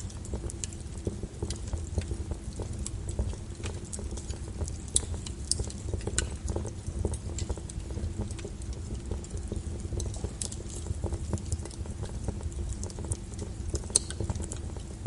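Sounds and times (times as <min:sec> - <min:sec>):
low rumble of flames: 0:00.0 - 0:15.0
wood fire crackling: 0:00.0 - 0:15.0.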